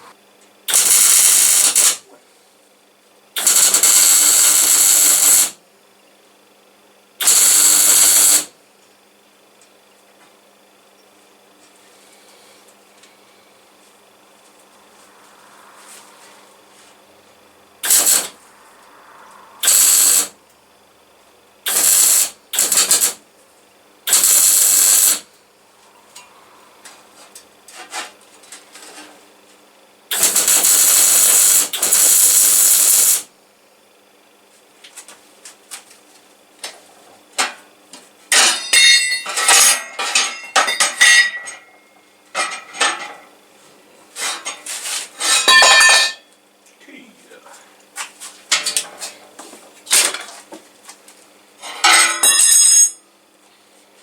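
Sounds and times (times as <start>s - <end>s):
welder hissing: 0.7s - 2.0s, 3.4s - 5.6s, 7.2s - 8.5s, 17.8s - 18.8s, 19.6s - 20.4s, 21.6s - 23.2s, 24.1s - 25.3s, 30.1s - 33.3s.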